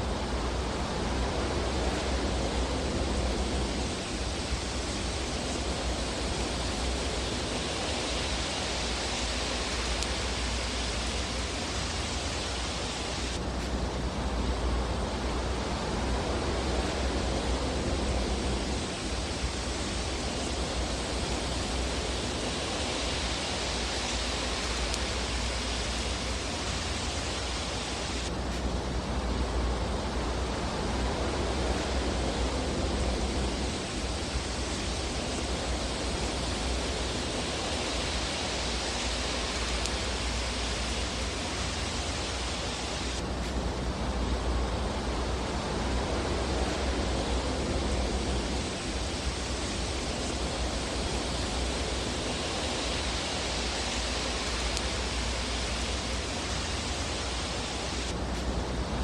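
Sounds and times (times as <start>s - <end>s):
fireplace fire hissing: 0.0s - 59.0s.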